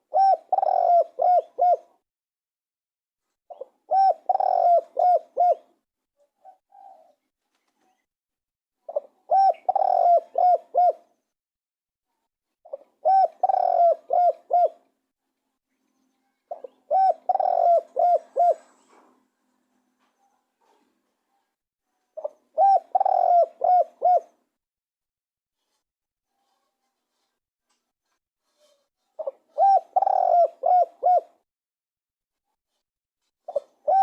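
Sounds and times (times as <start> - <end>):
dove cooing: 0.1 - 2.0, 3.5 - 5.7, 8.9 - 11.0, 12.7 - 14.8, 16.5 - 19.1, 22.2 - 24.4, 29.2 - 31.4, 33.5 - 34.0.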